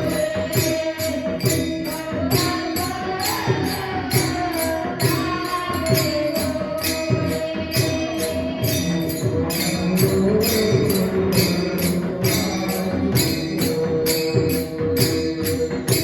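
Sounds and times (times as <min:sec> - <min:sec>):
drumming: 0:00.0 - 0:16.0
metal hand cymbals striking: 0:00.0 - 0:16.0.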